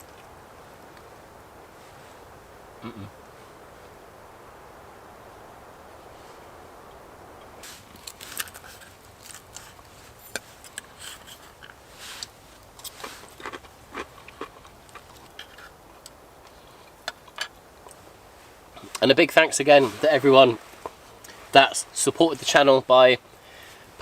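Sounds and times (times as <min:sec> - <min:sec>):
person chewing and crunching: 0:12.8 - 0:15.6.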